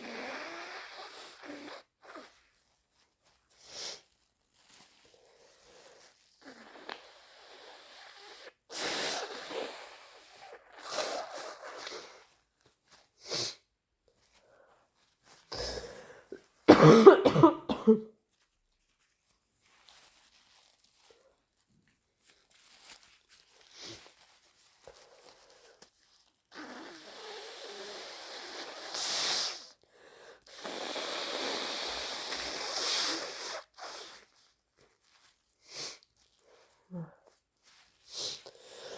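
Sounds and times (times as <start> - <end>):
person blowing nose: 0.0 - 2.6, 3.5 - 12.4, 13.2 - 13.7, 15.3 - 17.8, 23.6 - 24.3, 24.9 - 38.9
loud wet sneeze: 16.7 - 18.0.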